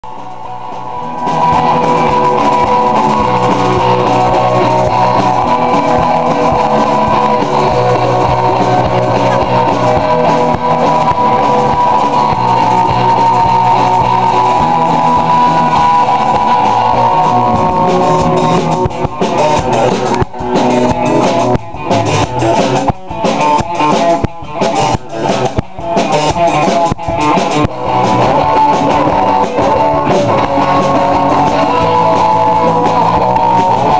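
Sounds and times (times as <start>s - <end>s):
rock music with guitar and drums: 0.0s - 33.9s.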